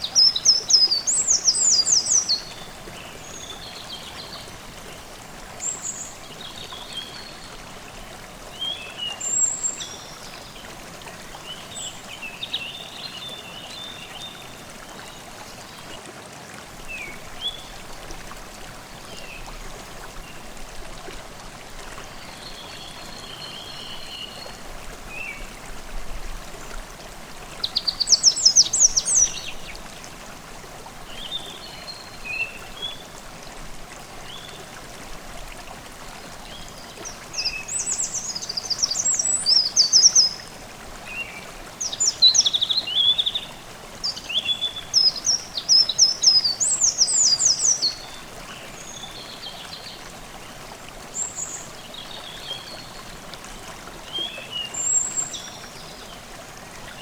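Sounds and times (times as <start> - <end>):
babbling stream: 0.0 - 57.0.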